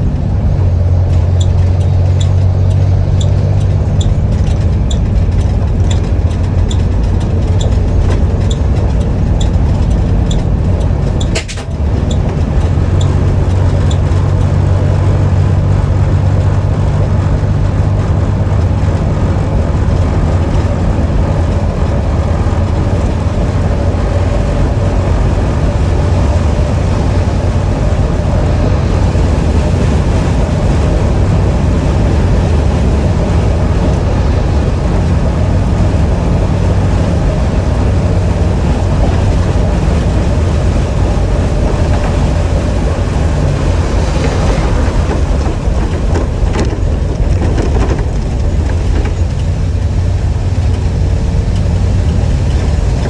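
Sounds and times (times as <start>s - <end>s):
bus engine drone: 0.0s - 53.0s
light ticking: 0.1s - 17.0s.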